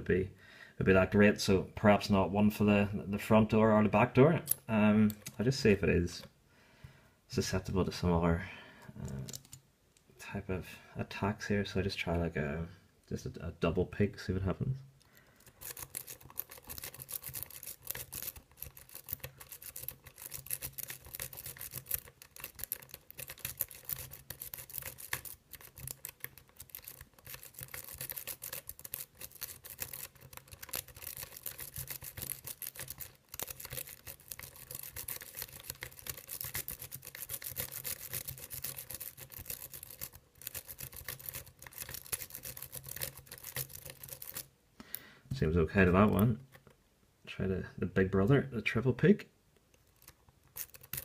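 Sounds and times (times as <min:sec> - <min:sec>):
lock pick rake scratching: 0:15.4 - 0:44.5, 0:49.9 - 0:51.0.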